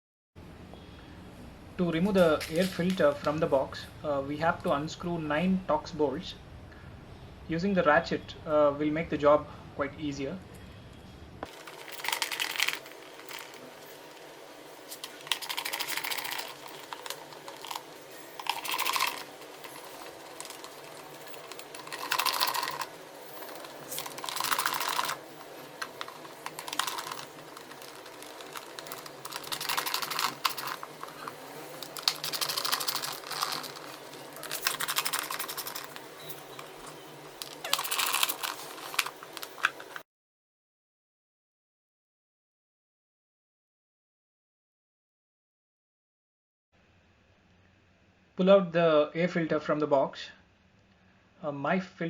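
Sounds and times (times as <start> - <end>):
ratchet wrench clicking: 23.9 - 25.2.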